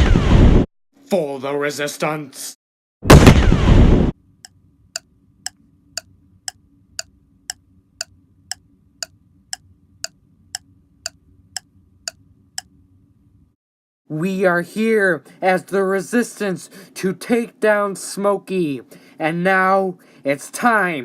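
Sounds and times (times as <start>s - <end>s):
explosion sound effect: 0.0s - 0.6s, 3.1s - 4.1s.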